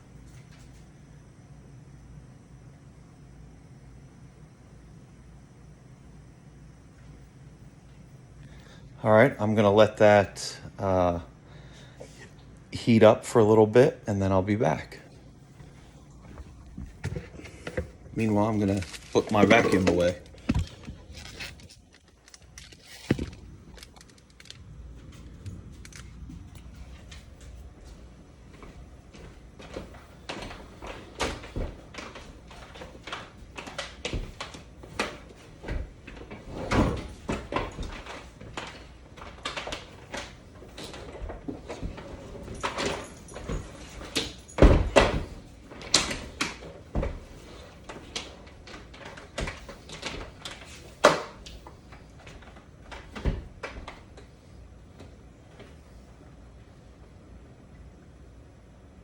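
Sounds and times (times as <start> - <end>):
vacuum cleaner knocking and clattering: 16.3 - 21.6, 29.1 - 54.4
door opening and shutting: 28.5 - 54.6.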